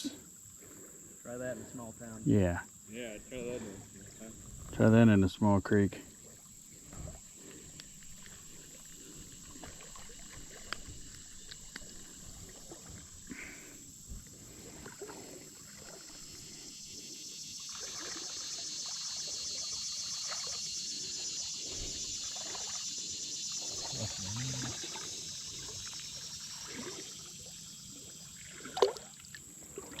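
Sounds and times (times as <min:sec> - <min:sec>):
insects buzzing: 0:00.0 - 0:30.0
water trickling and lapping: 0:00.0 - 0:30.0
small splashes: 0:06.0 - 0:16.7, 0:17.6 - 0:30.0.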